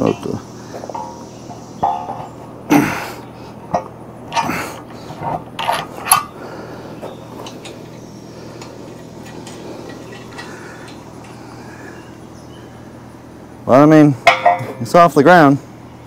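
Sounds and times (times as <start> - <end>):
steady low hum: 0.0 - 16.0
heavy metal clanks and knocks: 0.8 - 2.4, 14.3 - 14.9.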